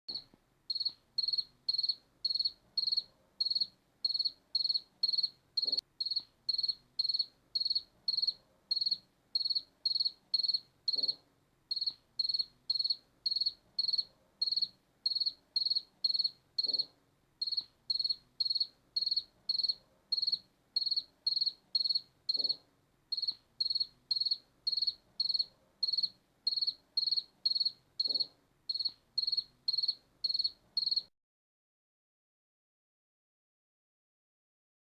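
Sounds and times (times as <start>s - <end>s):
cricket chirping: 0.1s - 31.1s.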